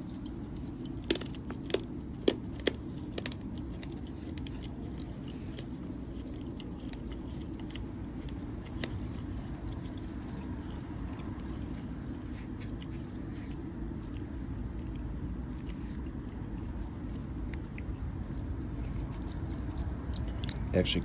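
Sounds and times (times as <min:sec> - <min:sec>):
steady low hum: 0:00.0 - 0:21.0
cards scraping and ticking: 0:00.6 - 0:14.2.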